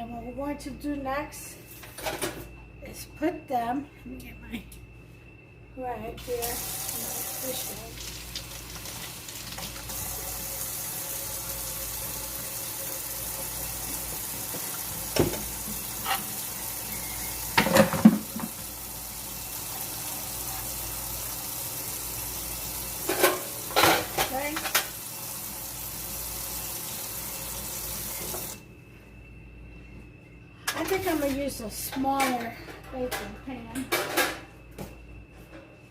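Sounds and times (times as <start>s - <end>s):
tap running into sink: 14.5s - 16.2s.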